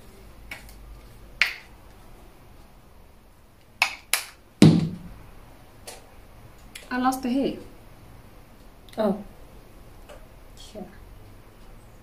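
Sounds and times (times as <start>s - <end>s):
dull knock: 4.6s - 5.1s.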